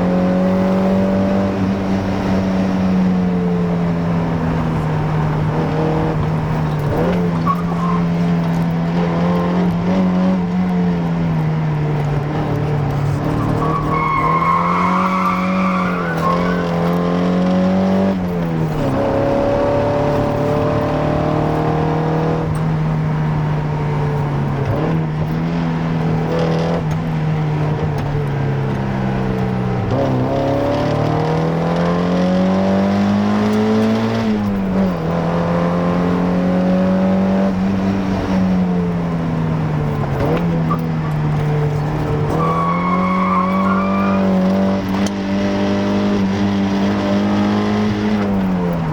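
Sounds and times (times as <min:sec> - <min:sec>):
car engine revving hard: 0:00.0 - 0:28.1, 0:28.9 - 0:48.9.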